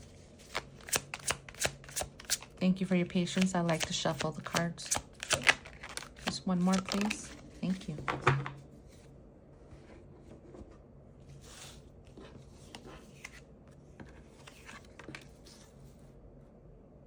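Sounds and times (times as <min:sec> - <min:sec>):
cards sliding and clicking: 0:00.4 - 0:02.6, 0:03.2 - 0:07.4, 0:11.4 - 0:15.8.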